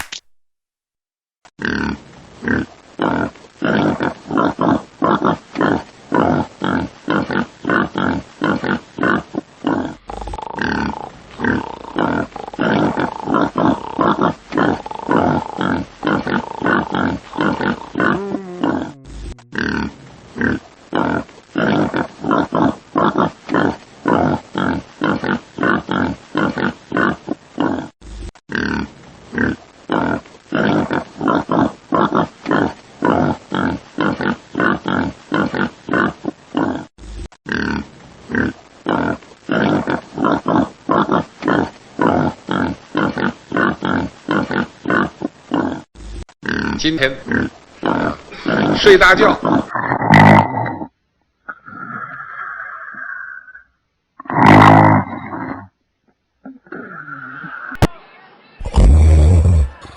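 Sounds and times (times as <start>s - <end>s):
pig grunting: 1.6s - 50.9s, 54.2s - 55.7s, 58.6s - 59.9s.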